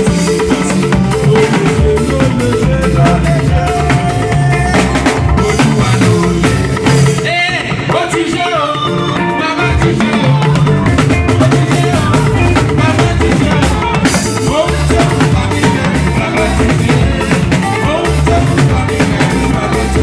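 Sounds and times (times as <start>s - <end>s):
bass guitar: 0.0s - 20.0s
drum kit: 0.0s - 20.0s
person singing: 0.0s - 20.0s.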